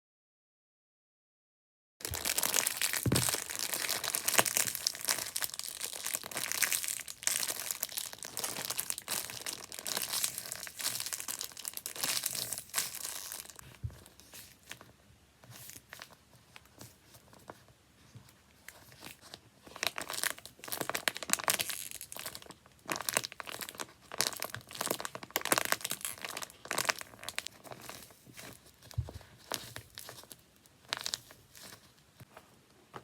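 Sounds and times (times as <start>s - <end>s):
paper crinkling: 2.0s - 14.9s.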